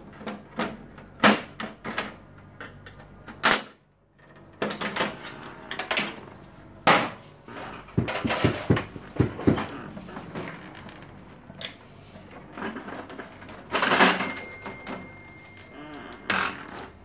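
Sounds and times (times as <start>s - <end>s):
copier parts clicking and knocking: 0.0s - 3.7s, 6.8s - 10.8s, 12.4s - 15.2s.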